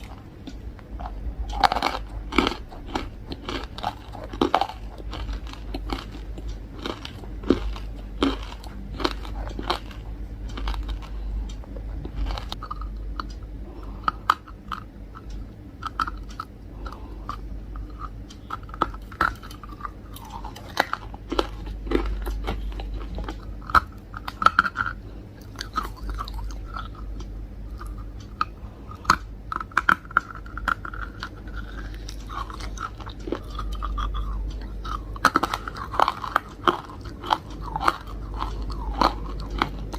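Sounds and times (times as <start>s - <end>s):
person chewing crunchy food: 0.0s - 39.9s.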